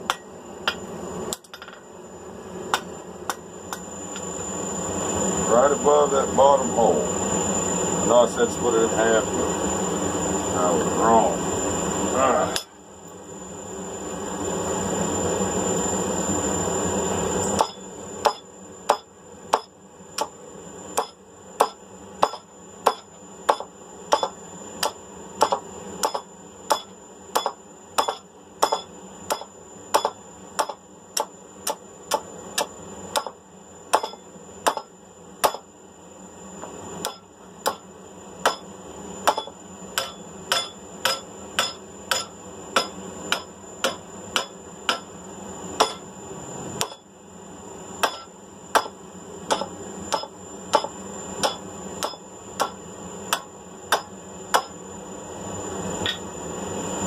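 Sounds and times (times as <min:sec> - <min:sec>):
hammer ringing on anvil: 0:00.1 - 0:00.8, 0:17.6 - 0:19.7, 0:21.0 - 0:31.3, 0:32.1 - 0:35.6, 0:37.0 - 0:37.8, 0:38.4 - 0:45.1, 0:45.8 - 0:46.1, 0:46.8 - 0:47.0, 0:48.0 - 0:48.9, 0:49.5 - 0:54.7.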